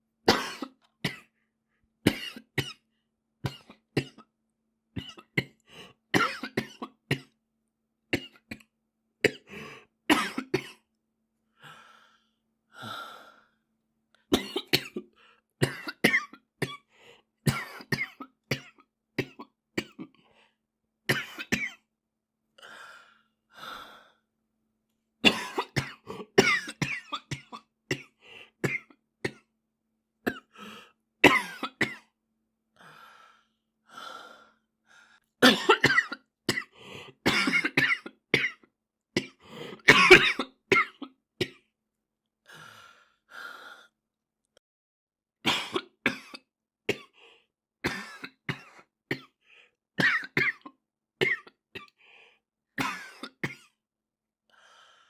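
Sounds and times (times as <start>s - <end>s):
boy coughing: 10.1s - 10.8s, 35.4s - 36.7s, 37.3s - 38.6s, 39.2s - 41.1s.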